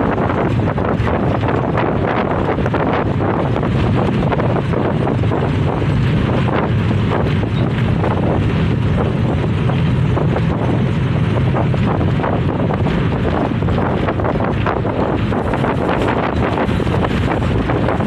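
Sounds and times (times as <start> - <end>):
wind buffeting microphone: 0.0 - 18.0.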